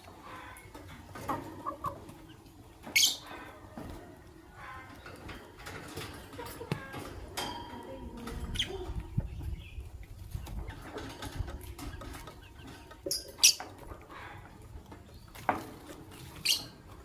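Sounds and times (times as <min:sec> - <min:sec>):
lovebirds chirping: 0:00.0 - 0:03.7, 0:07.7 - 0:10.9, 0:11.7 - 0:15.5, 0:16.1 - 0:16.9
clicks and scratches: 0:00.0 - 0:17.0.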